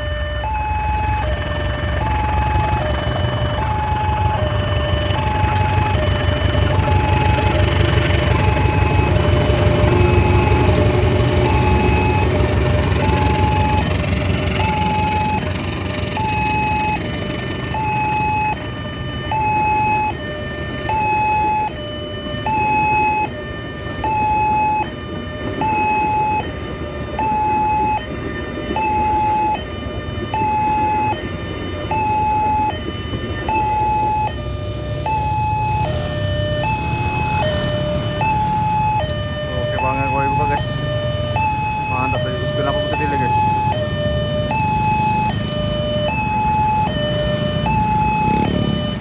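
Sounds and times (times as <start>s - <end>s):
broad rumbling noise: 0.0s - 49.0s
two-tone warning siren: 0.0s - 49.0s.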